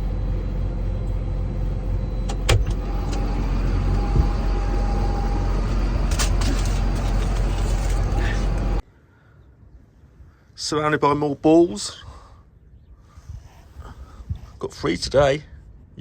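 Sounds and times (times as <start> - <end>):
engine rumble inside cab: 0.0 - 8.8
thin steady whine: 0.0 - 8.8.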